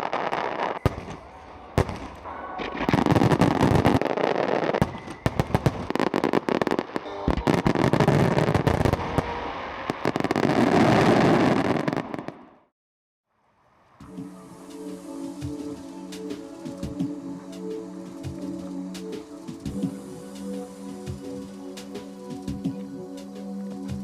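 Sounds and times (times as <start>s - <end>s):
music: 0.0s - 8.5s, 14.0s - 24.0s
fireworks bangs and crackling: 0.0s - 12.6s.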